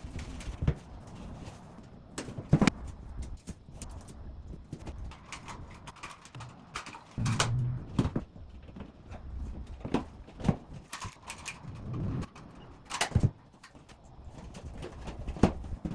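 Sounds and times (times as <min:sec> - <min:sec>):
short low buzz: 0:07.2 - 0:08.2.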